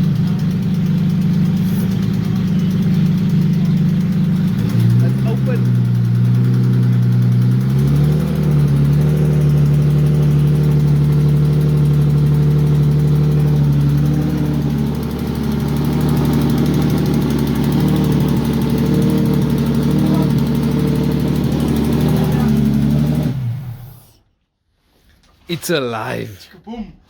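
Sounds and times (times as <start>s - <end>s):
car engine idling: 0.0s - 23.9s.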